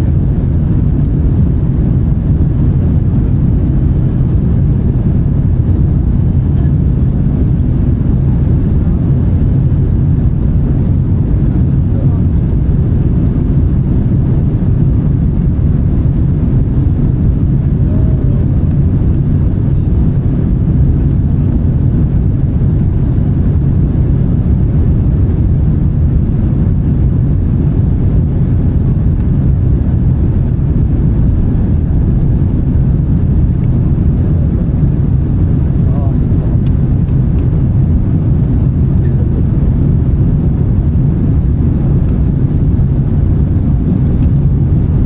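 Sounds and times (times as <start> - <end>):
airplane cabin rumble: 0.0 - 45.0.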